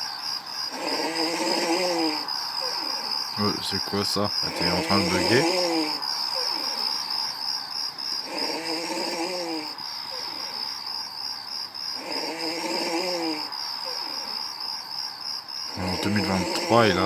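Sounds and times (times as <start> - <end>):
faint breaths: 2.2 - 14.8, 15.7 - 17.0
person snoring: 3.4 - 6.0, 15.7 - 17.0.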